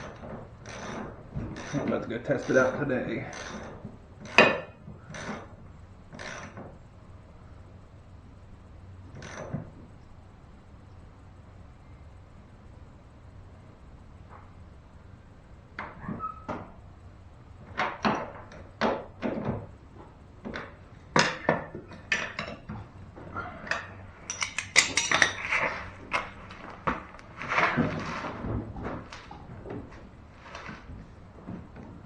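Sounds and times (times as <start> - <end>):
metal objects clinking and clattering: 23.7 - 26.3.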